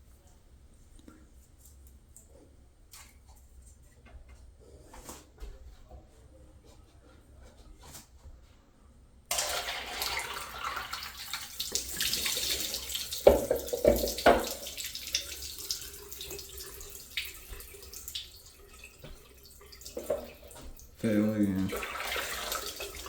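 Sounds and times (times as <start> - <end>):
toilet flushing: 9.3 - 23.0.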